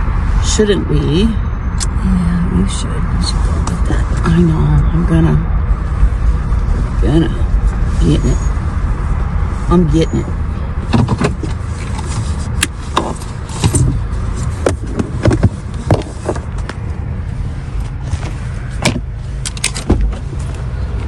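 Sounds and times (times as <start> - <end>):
car idling: 0.0 - 21.0
sharp clicks and knocks: 10.9 - 16.9.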